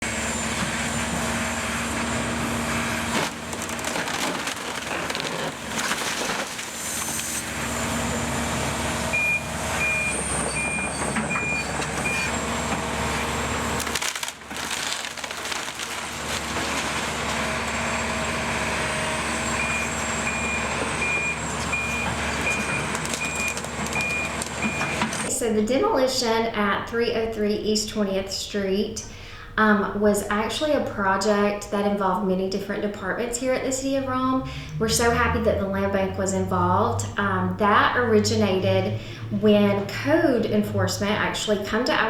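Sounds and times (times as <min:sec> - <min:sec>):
diesel demolition machinery: 0:00.0 - 0:25.5
debris crunching and splintering: 0:03.0 - 0:07.5, 0:13.8 - 0:17.8, 0:21.6 - 0:25.3
reversing alarm beeping: 0:09.1 - 0:12.8, 0:19.2 - 0:25.3.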